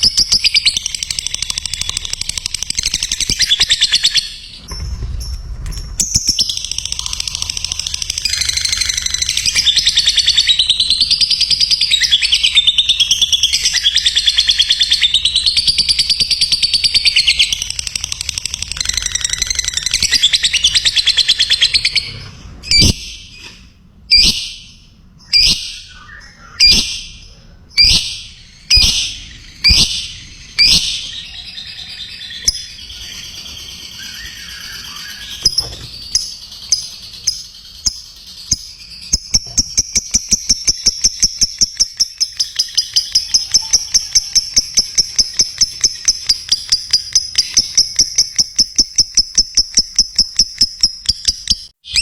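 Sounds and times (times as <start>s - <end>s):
bird chattering trill: 6.0s - 22.1s, 24.1s - 52.0s
sharp bird calls: 6.0s - 52.0s.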